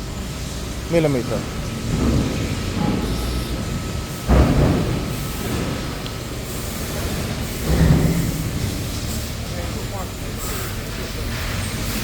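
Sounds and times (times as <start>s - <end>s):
industrial machinery running: 0.0s - 12.0s
loud mechanical thud: 4.2s - 6.0s, 7.2s - 9.0s.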